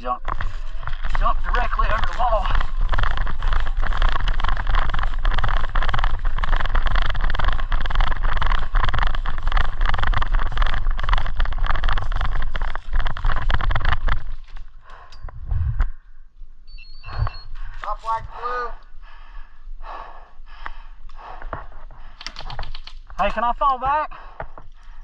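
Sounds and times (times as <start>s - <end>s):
rustling against microphone: 0.0s - 15.9s
irregular clicks: 20.6s - 23.4s.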